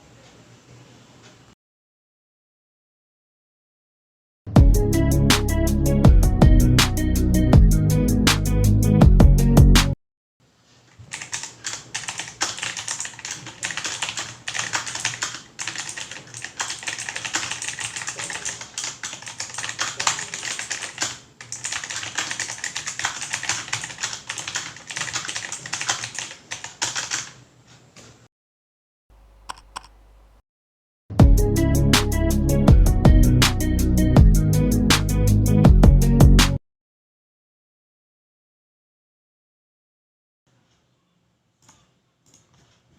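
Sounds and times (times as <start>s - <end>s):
fast typing on mechanical keyboard: 11.1s - 27.4s.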